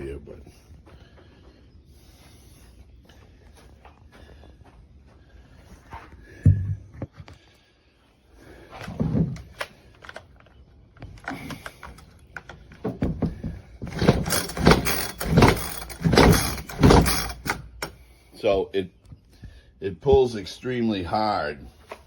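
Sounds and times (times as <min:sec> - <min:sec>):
chainsaw recoil starter pulls: 0:13.8 - 0:18.0.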